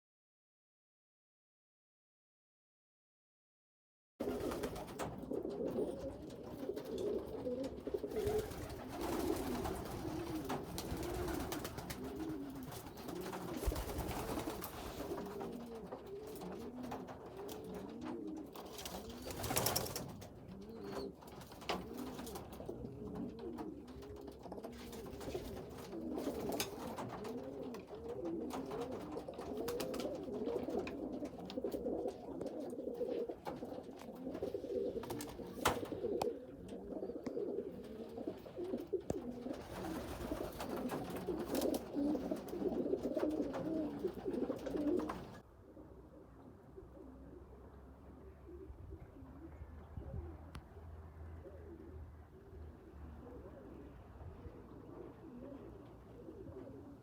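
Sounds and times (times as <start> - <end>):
pigeons cooing: 4.2 - 57.0.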